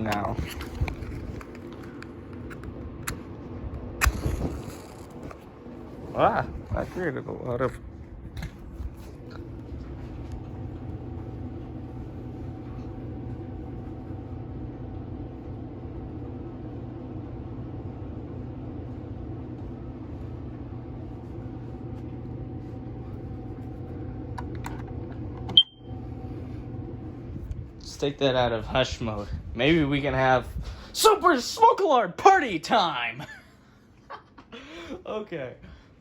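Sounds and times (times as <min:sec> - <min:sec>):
steady low hum: 0:00.0 - 0:36.0
smoke alarm beep: 0:25.5 - 0:25.9.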